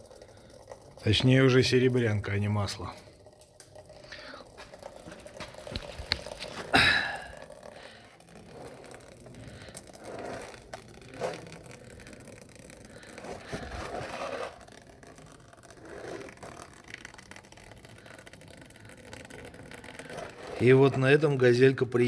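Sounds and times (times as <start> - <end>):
light scrapes and clicks: 13.0 - 14.8.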